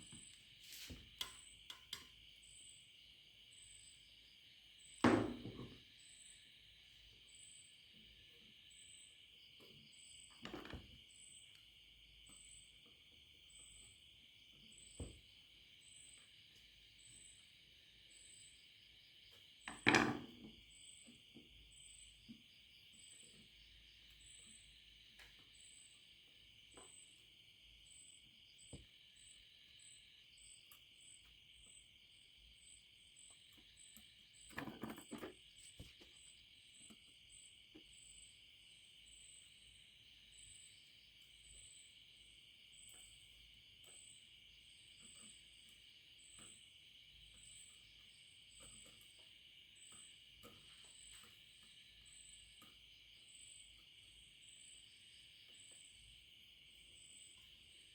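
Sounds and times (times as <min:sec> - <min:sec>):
tools knocking on workbench: 0:05.0 - 0:05.8, 0:10.4 - 0:10.9, 0:19.7 - 0:20.5, 0:34.5 - 0:36.0.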